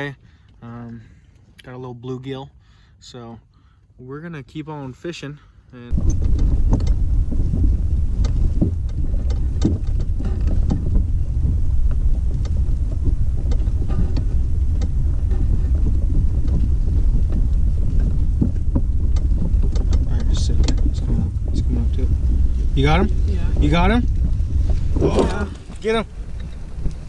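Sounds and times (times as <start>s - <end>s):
wind buffeting microphone: 5.9s - 27.0s.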